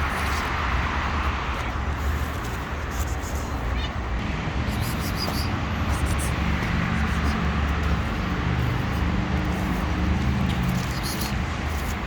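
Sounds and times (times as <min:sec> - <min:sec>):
street noise: 0:00.0 - 0:12.0
vehicle engine rumbling: 0:04.1 - 0:12.0.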